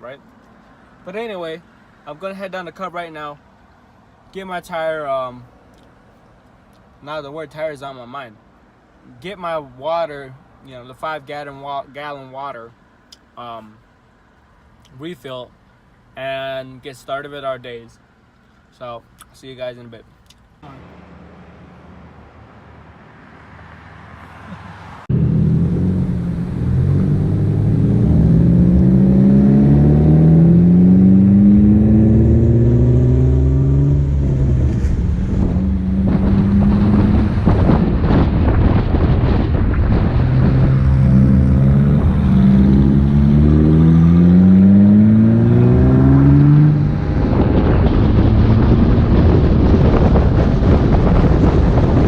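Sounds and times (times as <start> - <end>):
rushing wind and road noise: 20.5 - 52.0
car engine accelerating through gears: 20.6 - 52.0.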